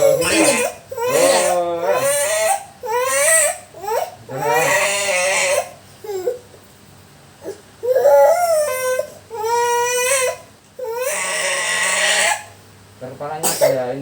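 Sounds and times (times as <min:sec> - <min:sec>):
child whimpering: 0:00.0 - 0:04.4, 0:05.0 - 0:06.4, 0:07.4 - 0:12.4.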